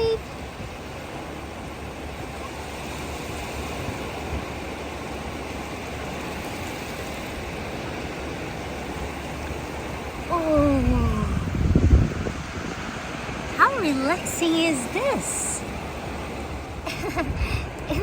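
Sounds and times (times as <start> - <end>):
voice calling out: 0.0 - 0.2, 10.3 - 11.5
rushing water: 0.0 - 18.0.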